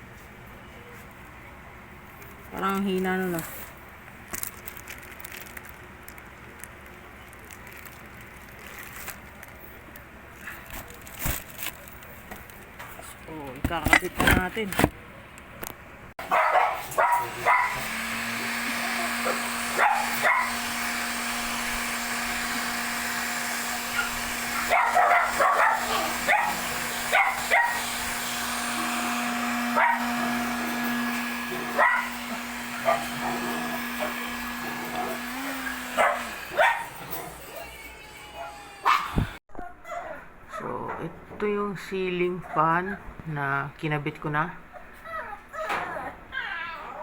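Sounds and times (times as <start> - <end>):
dog barking: 16.2 - 18.0, 19.0 - 20.6, 23.9 - 28.0, 29.7 - 30.1, 31.5 - 37.3, 38.4 - 40.7, 42.4 - 43.0
machine hum: 16.9 - 39.4.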